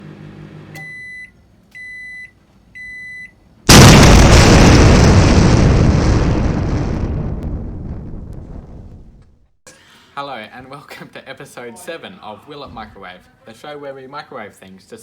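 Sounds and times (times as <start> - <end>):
loud explosion boom: 3.7 - 9.5.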